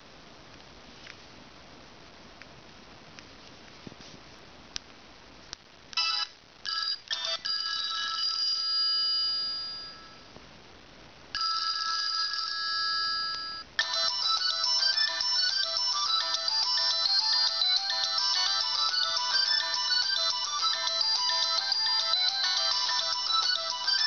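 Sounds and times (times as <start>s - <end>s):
fast ringtone tune: 6.0s - 10.2s, 11.4s - 24.0s
held ringtone chord: 6.0s - 10.3s, 11.4s - 24.0s.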